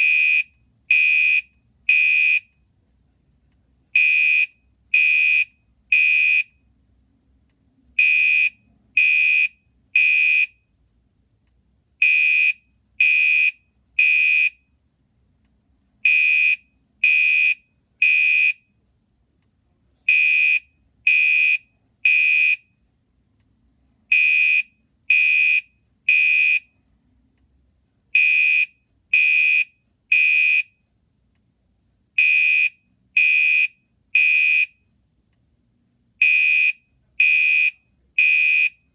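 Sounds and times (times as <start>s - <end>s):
fire alarm horn beeping: 0.0s - 2.4s, 8.0s - 10.5s, 20.1s - 22.7s, 28.2s - 30.7s, 32.2s - 34.8s, 36.2s - 38.8s.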